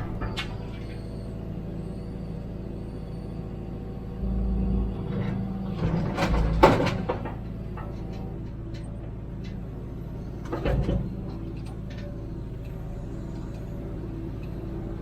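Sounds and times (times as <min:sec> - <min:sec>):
diesel engine running: 0:00.0 - 0:15.0
clanks and knocks: 0:05.2 - 0:09.6.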